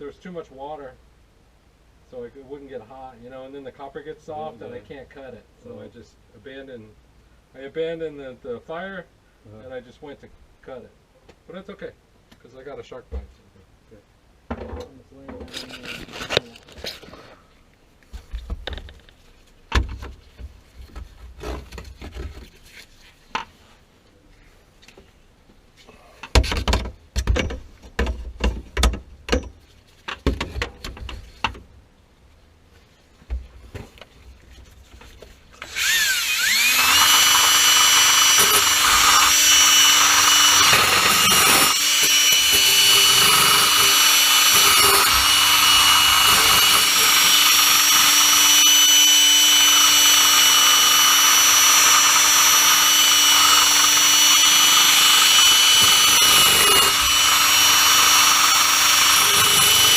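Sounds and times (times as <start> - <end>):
power tool motor whining: 35.6 - 59.9.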